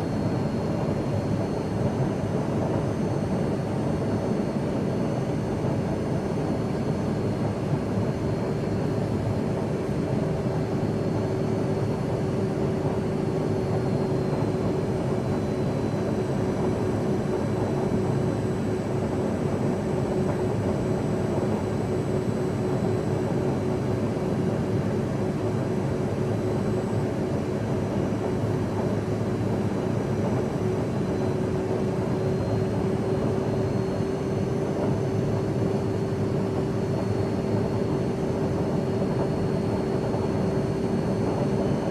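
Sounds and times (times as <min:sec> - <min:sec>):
jet engine and airflow rumble: 0:00.0 - 0:41.9.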